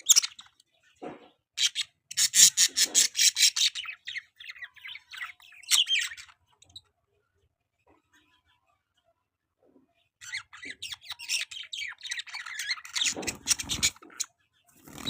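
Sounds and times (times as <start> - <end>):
budgerigars chattering and squawking: 1.6 - 6.8, 10.2 - 15.0.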